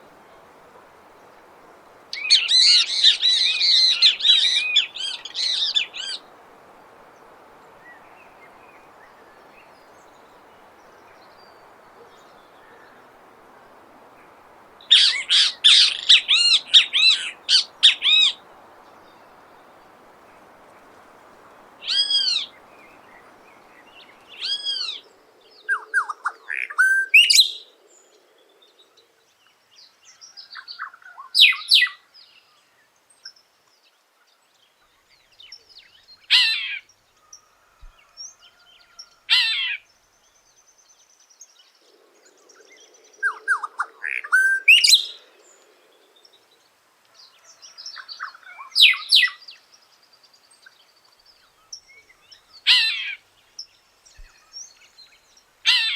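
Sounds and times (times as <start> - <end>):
bird singing whistled phrases: 26.6 - 27.5.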